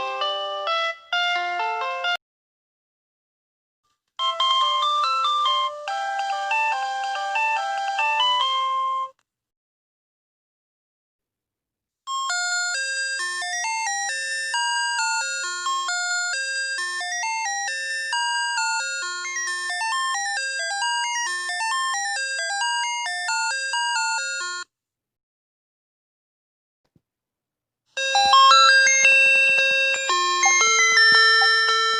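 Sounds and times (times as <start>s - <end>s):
electronic school bell chime: 28.0s - 31.9s.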